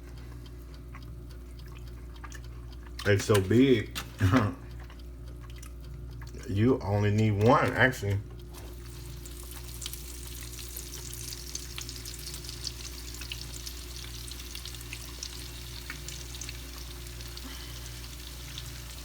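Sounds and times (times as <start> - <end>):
low steady hum: 0.0 - 19.0
oil sizzling in deep fryer: 8.6 - 19.0.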